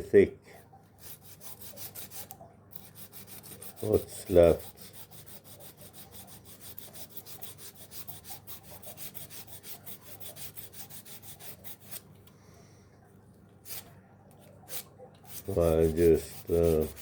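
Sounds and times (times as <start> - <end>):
sandpaper rubbing on wood: 2.9 - 12.0, 14.7 - 17.0.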